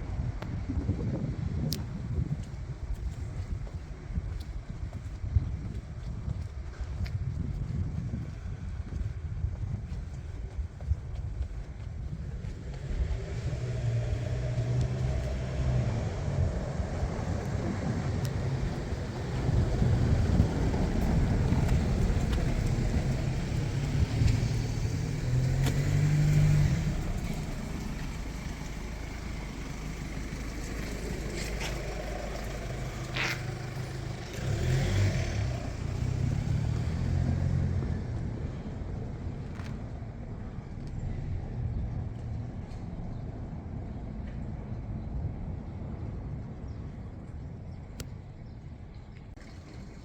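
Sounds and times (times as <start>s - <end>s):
vehicle engine rumbling: 0.0s - 50.0s
car driving by: 12.2s - 39.7s.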